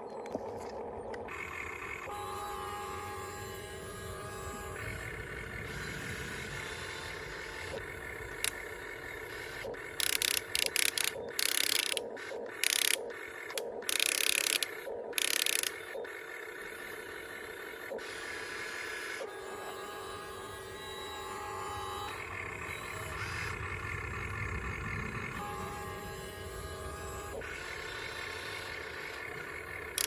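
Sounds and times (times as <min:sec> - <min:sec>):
toy electric motors whining: 0:00.8 - 0:30.0
gear ratcheting: 0:04.8 - 0:15.8, 0:29.2 - 0:30.0.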